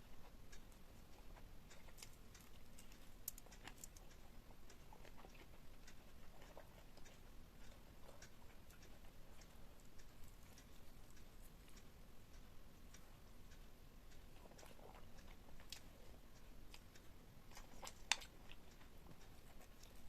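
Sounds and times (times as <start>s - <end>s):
wet chewing: 0.0s - 12.4s, 14.1s - 20.0s.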